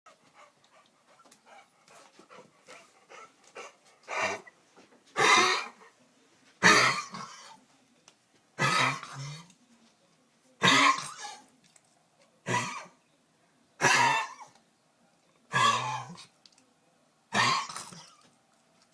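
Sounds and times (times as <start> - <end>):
dog coughing: 5.2 - 5.8, 6.6 - 7.6, 8.6 - 9.5, 10.6 - 11.4, 12.4 - 13.0, 13.8 - 14.5, 15.5 - 16.2, 17.3 - 18.2.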